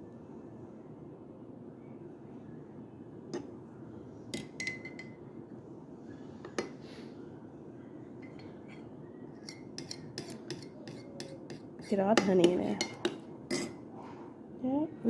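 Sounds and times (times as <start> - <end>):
steady low hum: 0.0 - 15.0
spoon clinking against cup: 4.4 - 5.2, 8.2 - 13.8.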